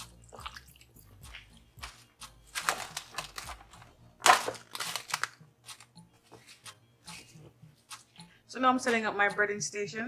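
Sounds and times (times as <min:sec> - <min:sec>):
crinkly rustling: 0:02.5 - 0:06.6.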